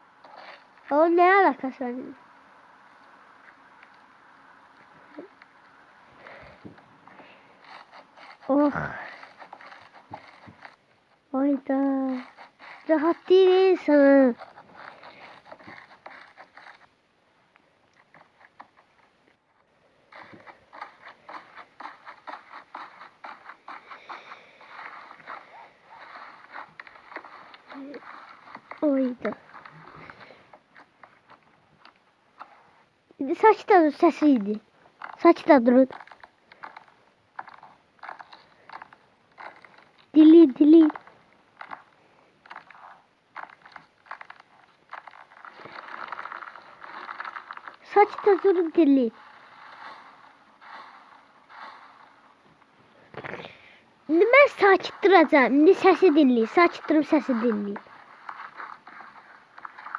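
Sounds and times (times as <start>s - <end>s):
slime crackling and squishing: 20.1s - 32.6s, 33.3s - 59.9s.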